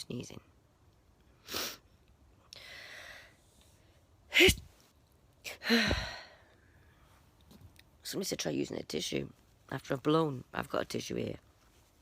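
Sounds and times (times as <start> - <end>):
woman sniffing: 1.4 - 1.8
woman breathing in: 2.5 - 3.8
woman sneezing loudly: 4.3 - 4.8.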